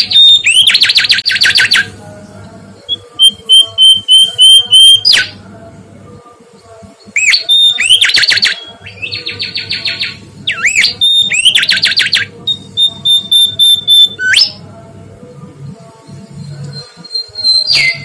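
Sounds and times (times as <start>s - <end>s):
bird singing whistled notes: 0.0s - 1.9s, 7.2s - 14.6s, 16.7s - 18.0s.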